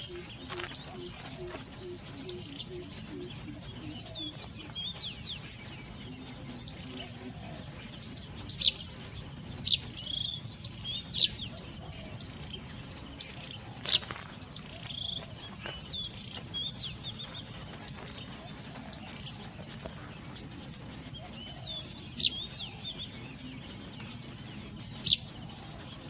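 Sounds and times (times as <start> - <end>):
loud sharp bird calls: 0.0 - 26.0
small birds chirping: 0.0 - 26.0.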